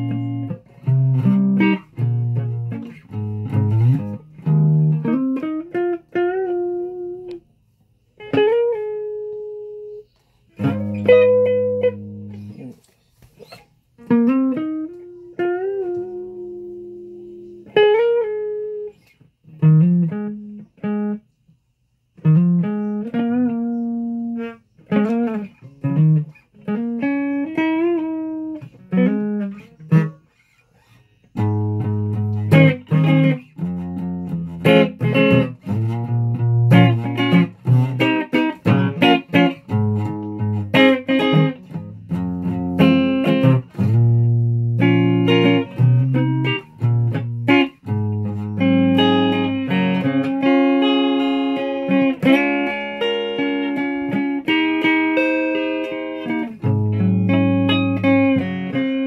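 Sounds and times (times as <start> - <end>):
solo guitar playing: 0.0 - 7.5, 8.2 - 12.8, 13.4 - 21.2, 22.2 - 59.0.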